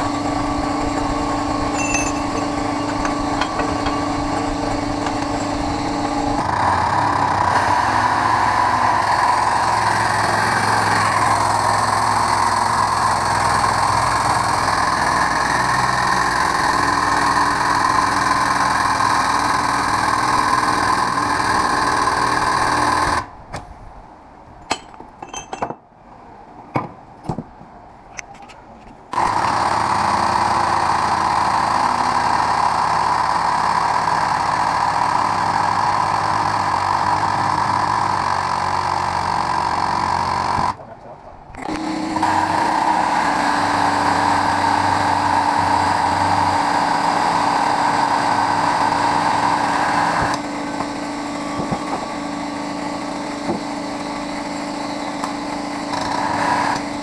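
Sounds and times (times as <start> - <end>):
angle grinder cutting steel: 0.0 - 23.3, 41.6 - 57.0
sharp clicks and knocks: 1.7 - 5.6.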